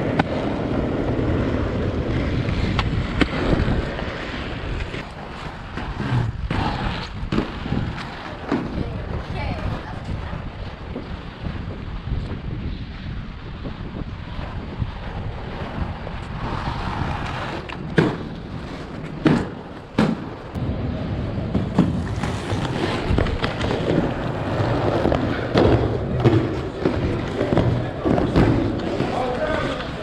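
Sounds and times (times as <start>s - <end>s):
inline skates rolling on pavement: 0.0s - 30.0s
wind rumble on microphone: 0.0s - 30.0s
skate landing clacks: 2.5s - 8.8s, 21.6s - 29.8s.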